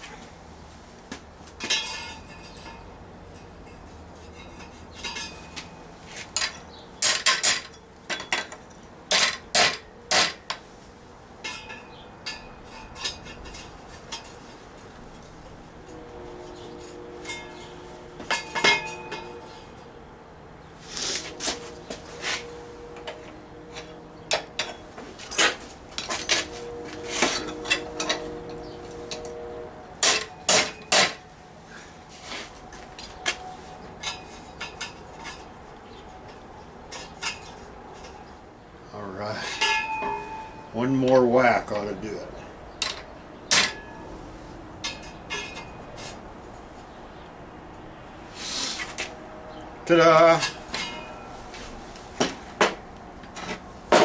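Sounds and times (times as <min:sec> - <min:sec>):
metal tools clanking: 0:01.6 - 0:10.5, 0:11.4 - 0:20.0, 0:21.2 - 0:31.2, 0:32.7 - 0:38.3, 0:39.2 - 0:42.1, 0:42.7 - 0:44.2, 0:44.8 - 0:46.2, 0:49.9 - 0:51.6.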